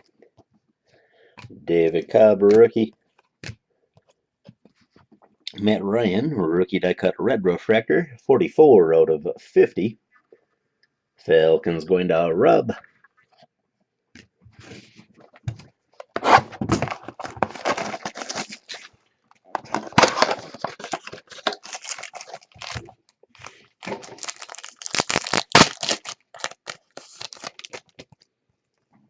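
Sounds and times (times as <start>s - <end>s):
cards rustling: 16.0s - 28.3s
wrapper crinkling and tearing: 16.2s - 19.0s, 19.6s - 28.2s.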